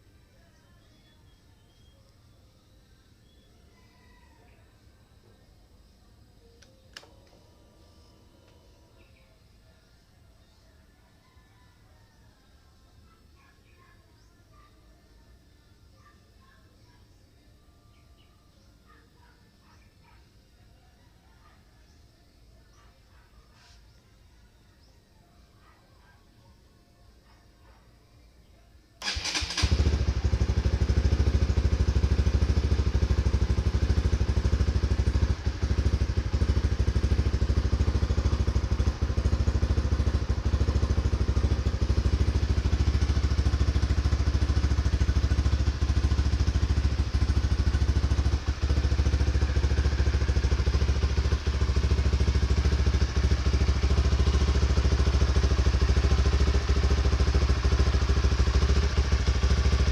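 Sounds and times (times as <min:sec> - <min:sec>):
motorcycle engine idling: 0:29.0 - 0:59.9.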